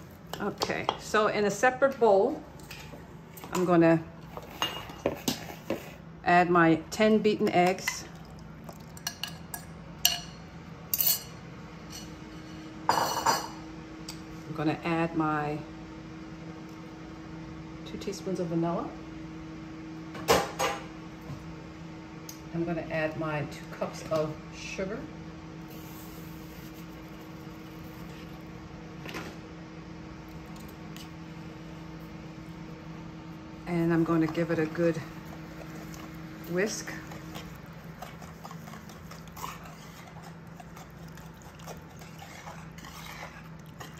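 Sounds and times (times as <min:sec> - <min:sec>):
appliance fan humming: 0:00.0 - 0:43.9
utensils clinking against bowl: 0:07.7 - 0:12.2.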